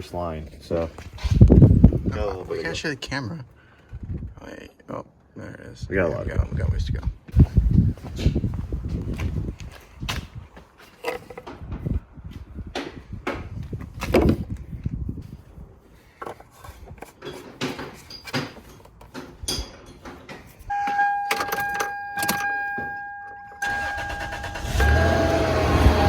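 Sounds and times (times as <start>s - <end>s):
knocks and clattering: 16.2s - 23.0s
truck engine starting and idling: 23.2s - 26.0s.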